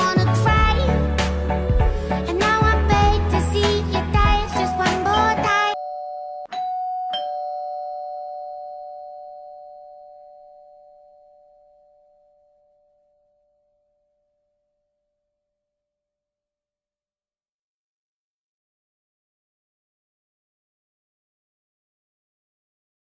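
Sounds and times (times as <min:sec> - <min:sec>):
two-tone doorbell chime: 0:05.7 - 0:14.9.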